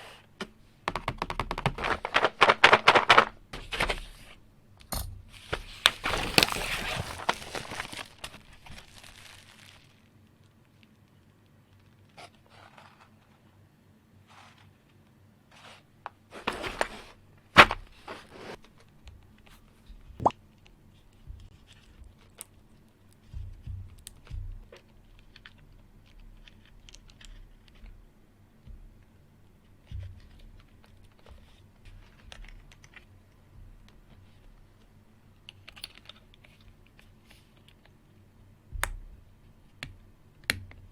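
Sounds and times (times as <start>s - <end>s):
rustling: 5.3s - 10.1s.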